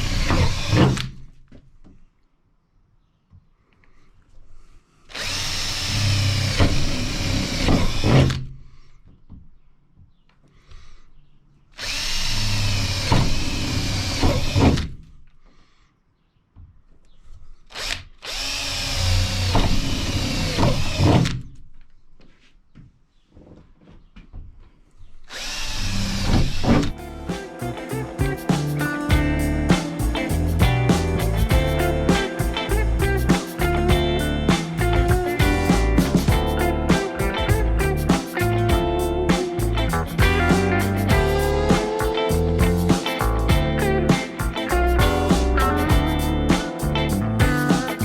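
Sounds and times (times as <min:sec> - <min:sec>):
power drill boring into sheet metal: 0:05.1 - 0:08.3, 0:11.8 - 0:14.8, 0:17.8 - 0:21.1, 0:25.3 - 0:26.6.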